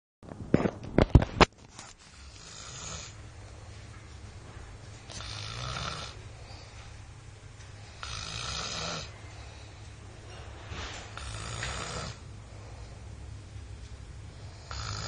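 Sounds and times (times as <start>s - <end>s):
person snoring loudly: 2.3s - 3.2s, 5.1s - 6.2s, 8.0s - 9.1s, 11.2s - 12.2s, 14.6s - 15.0s
low steady rumble: 12.2s - 15.0s.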